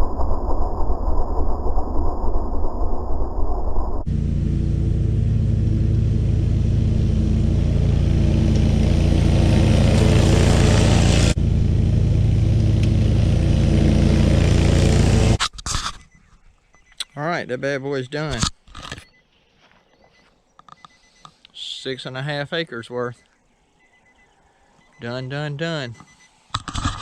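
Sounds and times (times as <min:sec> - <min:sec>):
mower engine running: 0:04.1 - 0:15.4.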